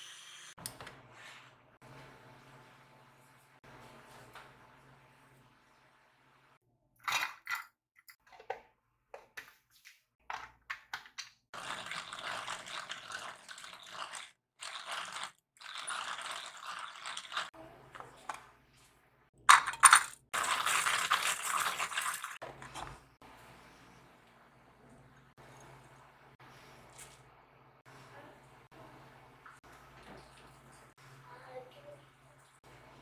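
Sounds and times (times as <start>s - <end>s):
kitchen clicks and knocks: 19.5s - 20.2s.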